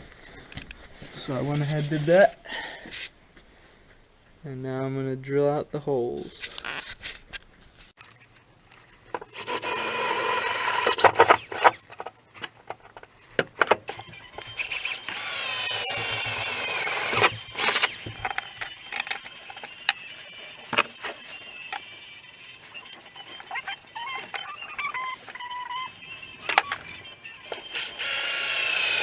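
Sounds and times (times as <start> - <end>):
clicks and knocks handling drill: 9.0 - 21.9
power drill boring: 9.3 - 11.8, 13.9 - 29.0.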